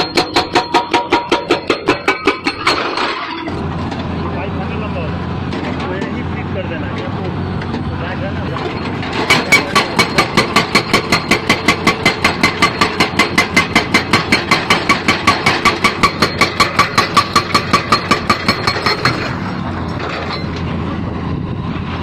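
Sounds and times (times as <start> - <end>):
hydraulic breaker hammering: 0.0 - 3.6, 8.8 - 20.6
excavator engine running: 0.0 - 22.0.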